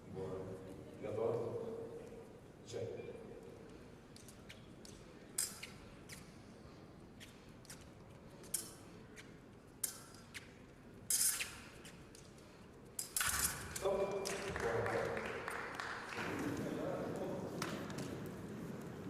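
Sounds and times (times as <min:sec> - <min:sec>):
fencing blade scrapes and clicks: 0:04.2 - 0:06.4, 0:07.1 - 0:13.8.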